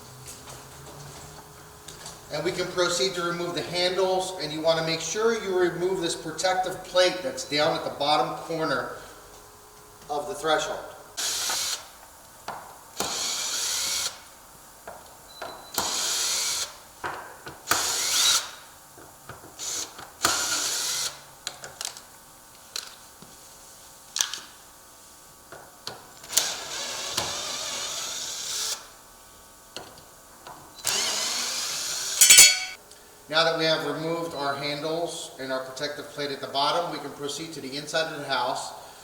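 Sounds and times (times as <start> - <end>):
power drill running: 11.2 - 11.9, 13.0 - 14.2, 15.7 - 16.8, 17.7 - 18.6, 19.6 - 21.2, 26.2 - 28.9, 30.8 - 32.4.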